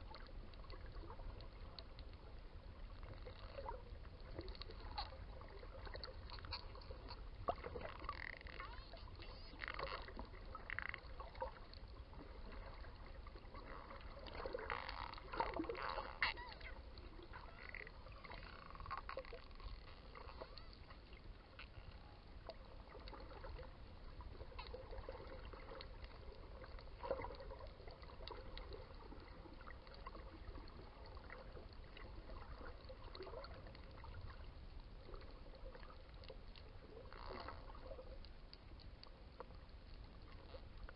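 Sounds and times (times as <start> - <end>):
low rumble of water: 0.0 - 40.9
dolphin clicks and squeaky calls: 8.0 - 10.1, 15.8 - 20.9.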